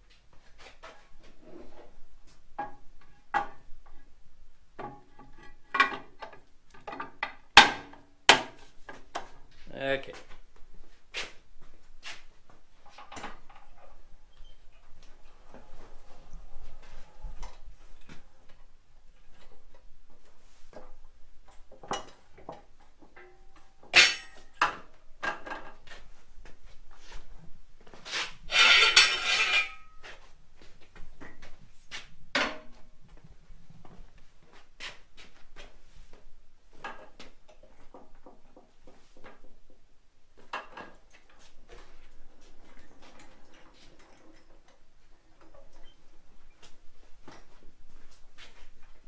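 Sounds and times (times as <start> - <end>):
steel parts clanking: 23.9 - 24.5, 28.5 - 30.0
metallic ring: 24.0 - 24.5, 28.5 - 30.1.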